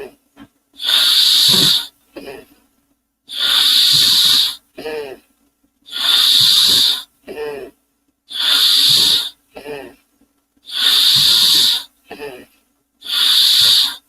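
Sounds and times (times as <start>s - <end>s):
person hissing with mouth: 0.8s - 1.9s, 3.3s - 4.6s, 5.9s - 7.1s, 8.3s - 9.4s, 10.7s - 11.9s, 13.0s - 14.0s.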